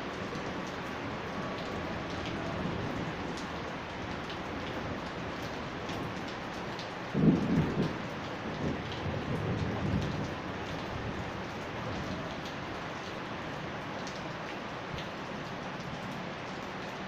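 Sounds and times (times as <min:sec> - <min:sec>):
steady rain falling: 0:00.0 - 0:17.0
low rumble of thunder: 0:07.1 - 0:12.1.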